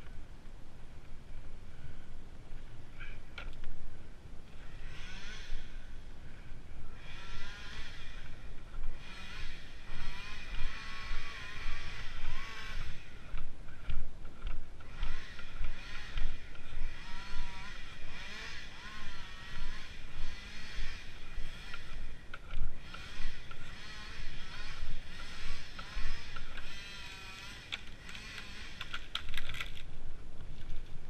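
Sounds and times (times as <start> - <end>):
handsaw cutting wood: 14.9 - 22.0, 22.8 - 29.0.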